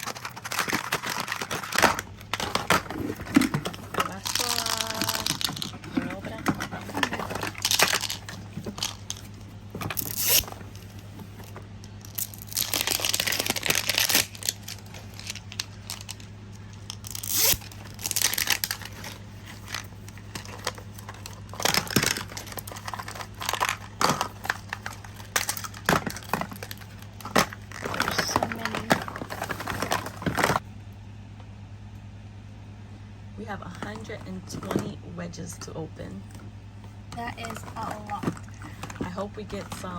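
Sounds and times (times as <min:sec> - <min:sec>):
packaging being torn and crinkled: 0:00.0 - 0:03.1, 0:09.9 - 0:10.9, 0:11.9 - 0:30.6.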